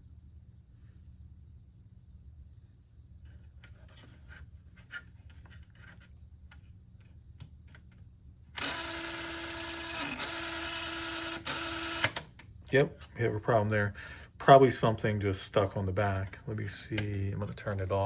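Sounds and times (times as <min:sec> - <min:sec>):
tape motor whirring with whine: 0:08.6 - 0:12.3.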